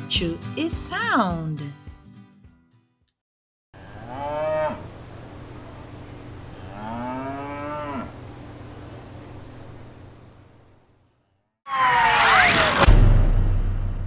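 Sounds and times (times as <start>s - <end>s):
cow mooing: 3.8s - 4.9s, 6.5s - 8.2s.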